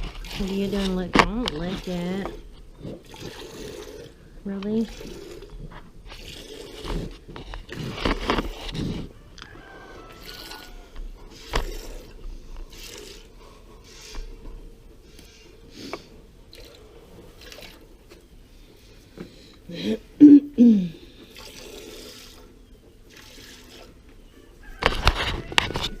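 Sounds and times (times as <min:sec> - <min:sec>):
calf licking microphone: 0:00.0 - 0:09.1.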